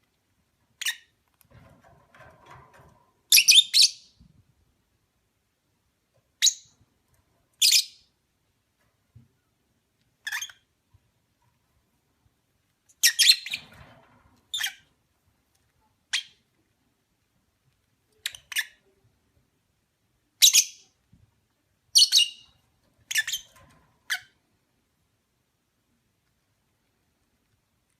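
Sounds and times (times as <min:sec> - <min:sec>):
lovebird chirping and squawking: 0:00.8 - 0:01.1, 0:03.3 - 0:04.1, 0:07.6 - 0:08.0, 0:10.2 - 0:10.6, 0:13.0 - 0:13.6, 0:18.2 - 0:18.8, 0:20.4 - 0:20.8, 0:21.9 - 0:22.4.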